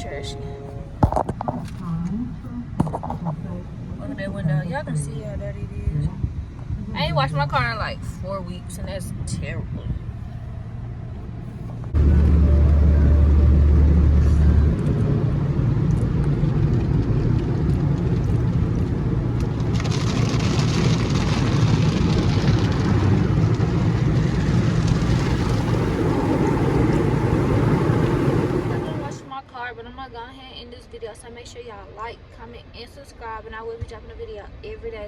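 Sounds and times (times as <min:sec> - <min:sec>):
loud rumble: 0:04.7 - 0:29.3
car wash water spray and machinery: 0:10.1 - 0:29.4.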